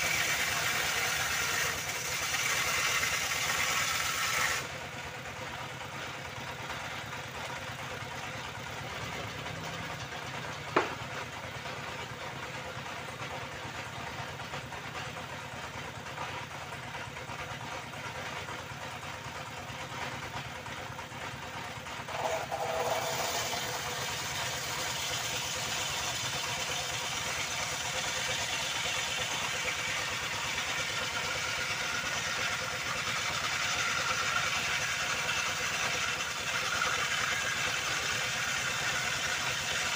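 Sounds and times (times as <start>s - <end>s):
circular saw motor running: 0.0s - 5.2s, 8.8s - 11.2s, 22.0s - 39.9s.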